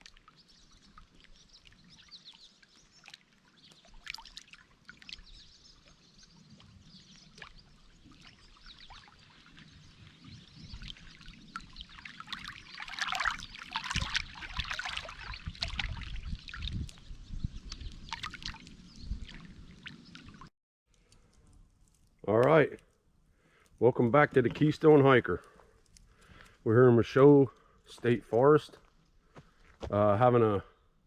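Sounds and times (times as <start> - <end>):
water trickling and splashing: 0.0 - 22.9.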